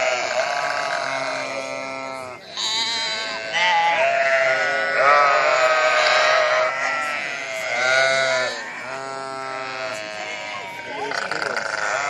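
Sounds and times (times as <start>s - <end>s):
sheep bleating: 0.0s - 12.0s.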